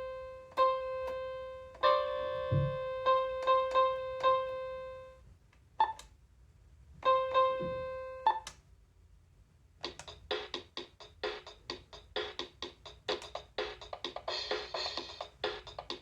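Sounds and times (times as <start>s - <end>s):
toy keyboard electronic notes: 0.0s - 5.1s
electronic drum rhythm: 9.8s - 16.0s.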